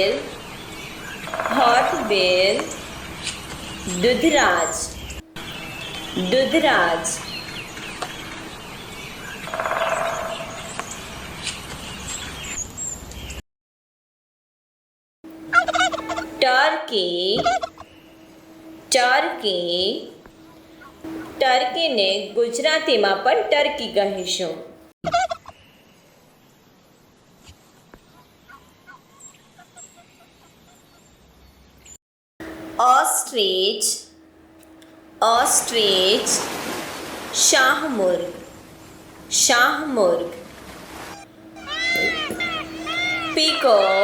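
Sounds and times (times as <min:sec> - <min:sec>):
outdoor background noise: 0:00.0 - 0:13.4, 0:15.3 - 0:44.0
bird buzzy rattle: 0:00.5 - 0:03.9, 0:05.0 - 0:12.3, 0:15.3 - 0:16.4, 0:40.5 - 0:44.0
turkey clucking: 0:15.5 - 0:16.3, 0:41.0 - 0:44.0
bird chirps: 0:41.1 - 0:44.0.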